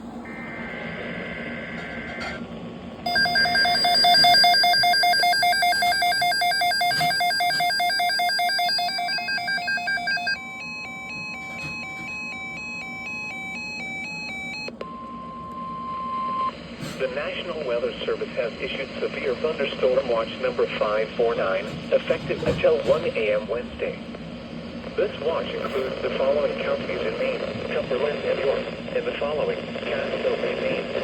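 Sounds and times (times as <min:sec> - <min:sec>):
steady alert tone: 0:03.1 - 0:10.4
warbling multi-tone alert signal: 0:03.1 - 0:14.6
stepping pattern of beeps: 0:03.1 - 0:15.1.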